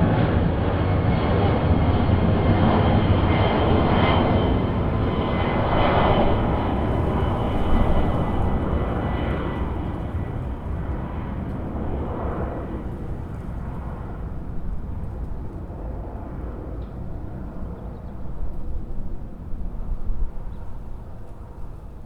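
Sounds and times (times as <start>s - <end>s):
jet engines roaring: 0.0s - 15.0s
high jet engine whine: 0.0s - 22.0s.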